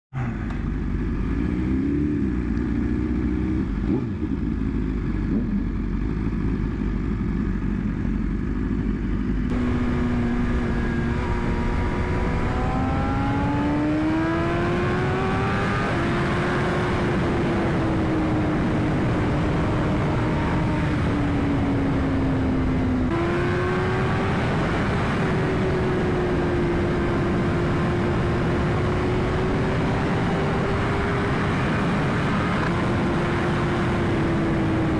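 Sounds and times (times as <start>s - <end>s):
motorcycle engine revving: 0.2s - 34.9s
wind rush: 9.5s - 34.9s.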